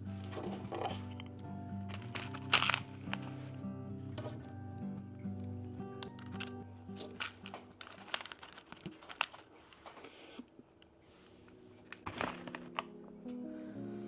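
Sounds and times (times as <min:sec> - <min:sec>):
plastic packaging crinkling: 0:00.2 - 0:03.5, 0:06.1 - 0:10.3, 0:11.8 - 0:13.2.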